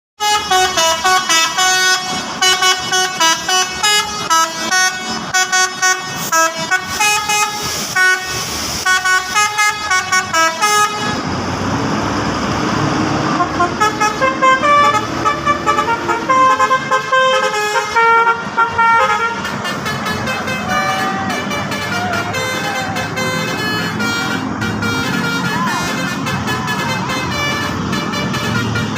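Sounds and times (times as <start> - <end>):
bus horn playing a melody: 0.2 - 11.3, 13.2 - 28.9
loud rushing noise with low tone: 11.0 - 16.4.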